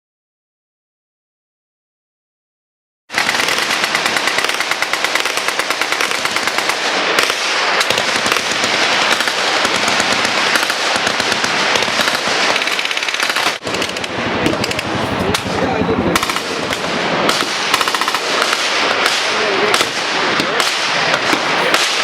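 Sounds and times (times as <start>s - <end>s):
machine guns firing: 3.1s - 22.0s.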